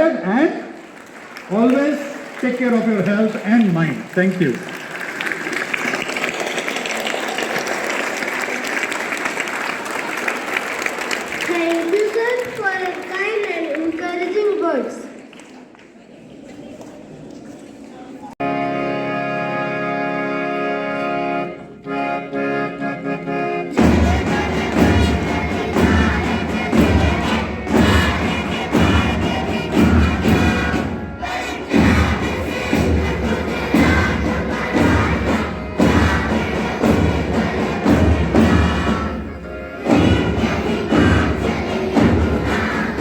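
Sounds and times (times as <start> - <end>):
held chord: 18.4 - 28.4
song with heavy steady beat: 23.8 - 43.0.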